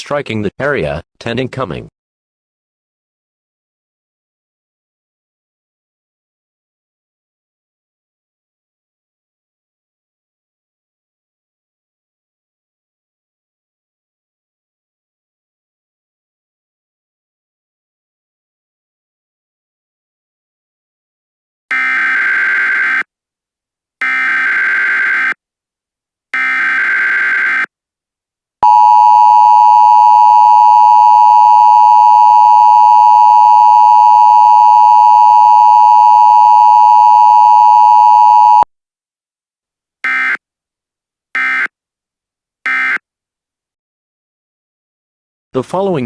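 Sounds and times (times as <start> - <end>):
harsh two-tone attention signal: 28.6 - 38.6.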